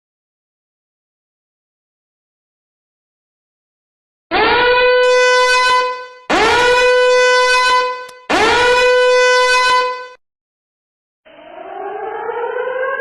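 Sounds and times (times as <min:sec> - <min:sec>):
alarm horn blasts: 0:04.3 - 0:10.2.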